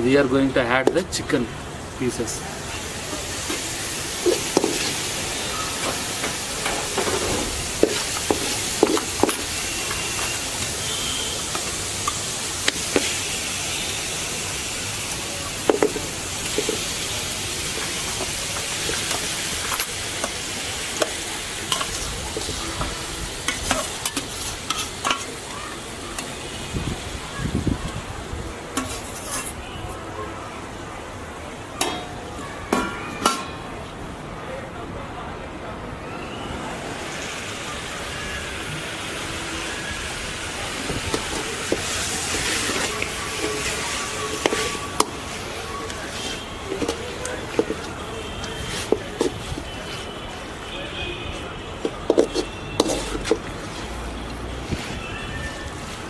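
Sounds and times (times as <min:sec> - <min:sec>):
chicken sizzling in hot oil: 0:01.8 - 0:28.0, 0:36.4 - 0:50.8
spoon scraping and knocking pan: 0:04.2 - 0:05.0, 0:05.8 - 0:10.4, 0:41.1 - 0:45.2, 0:45.9 - 0:50.0, 0:51.8 - 0:53.5.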